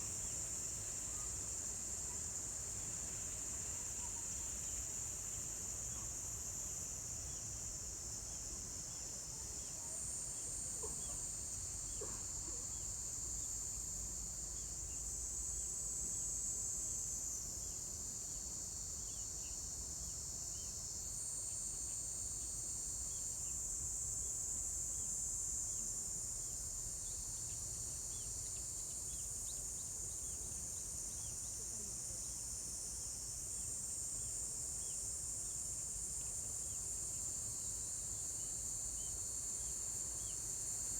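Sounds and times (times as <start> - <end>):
insects trilling: 34.8 - 40.9.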